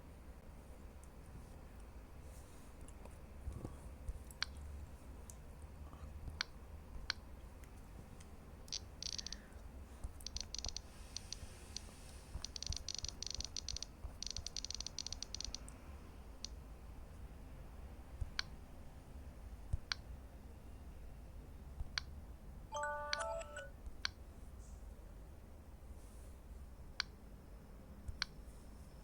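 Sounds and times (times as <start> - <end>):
tablet clicking: 8.7 - 9.4, 10.2 - 15.6, 22.8 - 23.7.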